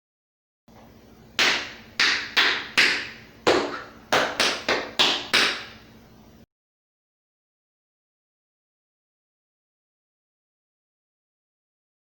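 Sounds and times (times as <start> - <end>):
tap shoes striking floor: 1.4 - 5.8.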